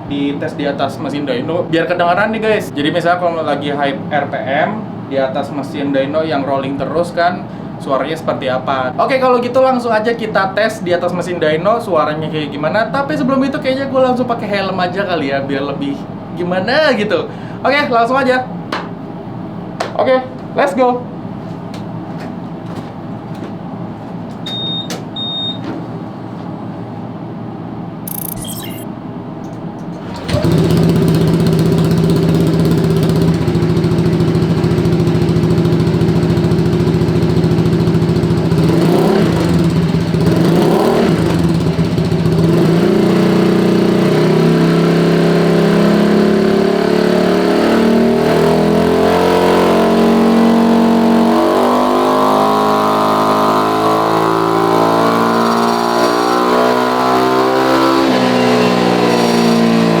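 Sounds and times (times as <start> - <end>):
scooter engine idling and revving: 30.3 - 51.3.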